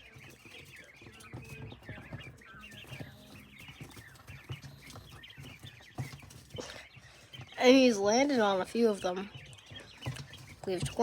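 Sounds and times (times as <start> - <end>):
quail chirps and peeps: 0.0 - 11.0.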